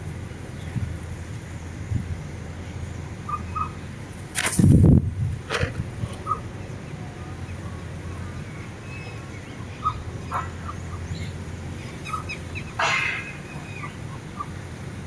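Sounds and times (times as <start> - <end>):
wind rumble on microphone: 0.0 - 12.8
birds chirping: 0.0 - 15.0
harsh bird call: 8.6 - 14.6.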